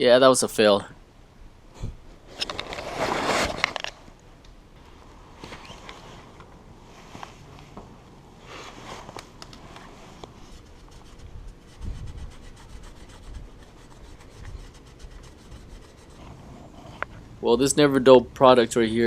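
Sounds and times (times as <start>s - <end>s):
polish rubbing on chrome rim: 9.9s - 17.0s.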